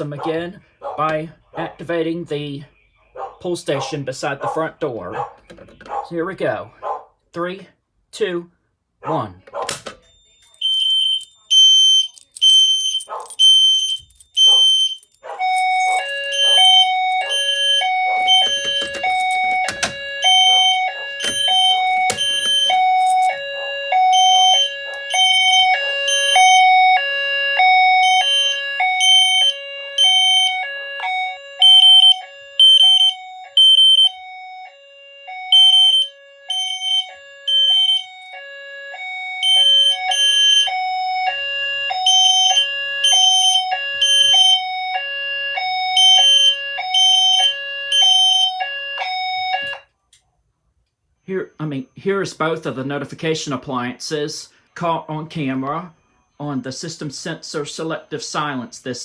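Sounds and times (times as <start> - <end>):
high-pitched fire alarm beep: 10.0 - 49.9
two-note high-low alarm tone: 13.8 - 40.8.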